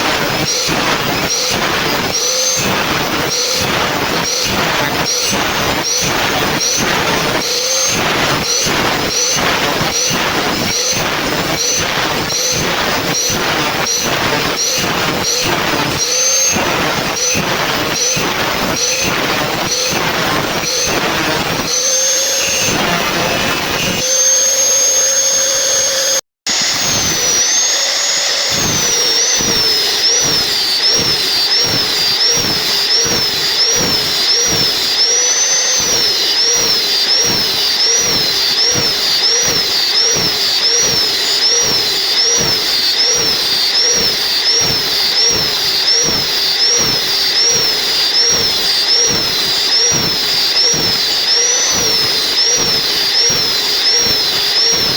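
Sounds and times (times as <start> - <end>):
saw blade whining: 0.0 - 54.9.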